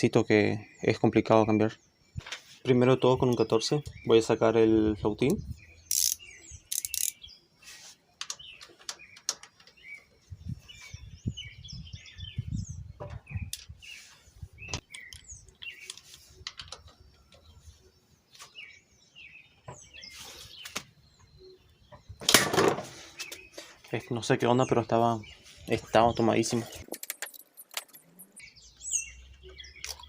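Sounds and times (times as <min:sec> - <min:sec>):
small birds chirping: 0:00.0 - 0:30.0
wrench clicking on metal: 0:05.9 - 0:07.2.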